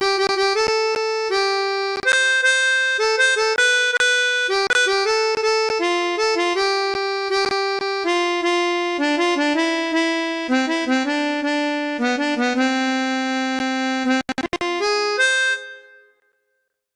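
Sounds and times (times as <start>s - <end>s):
clicks: 0.0s - 2.6s, 3.2s - 5.9s, 6.6s - 8.0s, 13.6s - 14.7s
chromatic harmonica melody: 0.0s - 16.4s.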